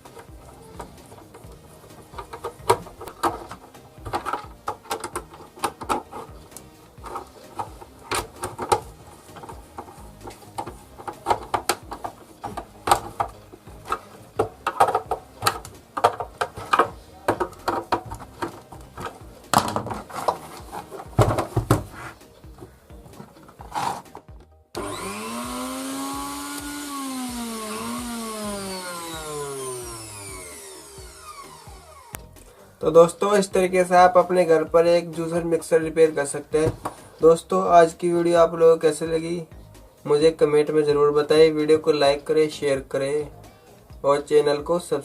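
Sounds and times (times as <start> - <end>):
hands fitting mixer grinder parts: 0.0 - 32.5.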